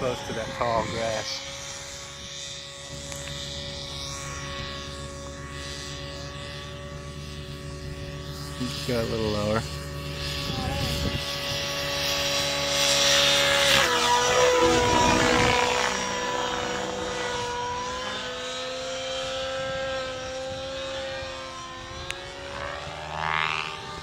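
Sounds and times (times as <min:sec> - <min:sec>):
model helicopter engine: 0:00.0 - 0:24.0.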